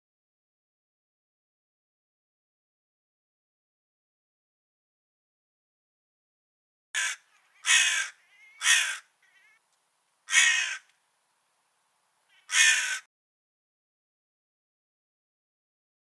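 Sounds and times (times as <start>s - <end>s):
crow cawing: 7.0s - 9.6s, 10.3s - 10.9s, 12.3s - 13.1s
faint soft bird calls: 7.0s - 13.1s.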